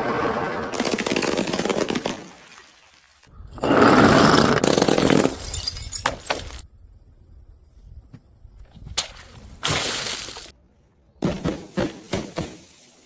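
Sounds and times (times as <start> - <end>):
glass bottle smashing: 4.7 - 6.6
glass shards clinking: 5.0 - 6.6.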